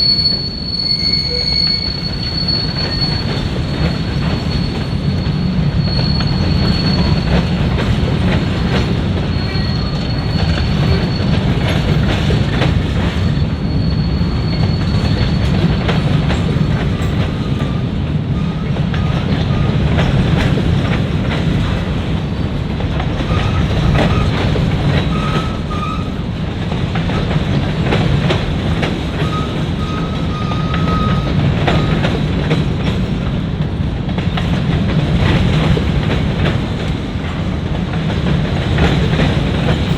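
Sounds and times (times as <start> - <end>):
wheel squeals: 0.0 - 17.8, 23.2 - 26.2, 29.1 - 32.2
freight train rumbling past: 0.0 - 39.9
wheels clacking over rail joints: 2.1 - 39.9.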